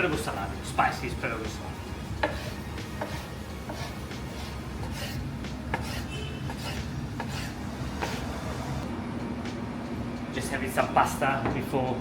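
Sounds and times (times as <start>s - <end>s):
knife cutting on wooden board: 2.2s - 8.7s.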